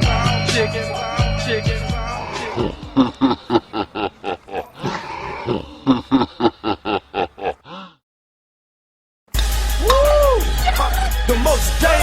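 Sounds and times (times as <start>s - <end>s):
person laughing in rhythmic pulses: 2.2s - 7.9s.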